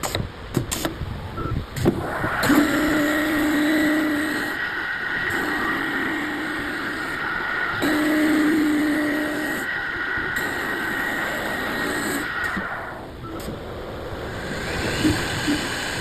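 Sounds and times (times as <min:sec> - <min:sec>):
wood being cut: 0:01.9 - 0:13.0, 0:14.3 - 0:16.0
lathe motor whine: 0:01.9 - 0:16.0.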